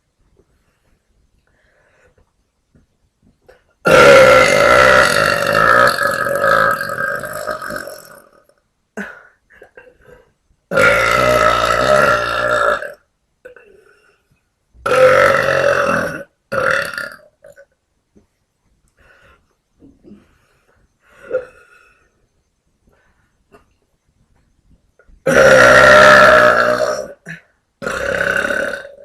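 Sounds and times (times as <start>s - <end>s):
woman burping loudly: 3.8s - 10.1s, 10.7s - 14.0s, 14.8s - 17.7s, 25.2s - 29.0s.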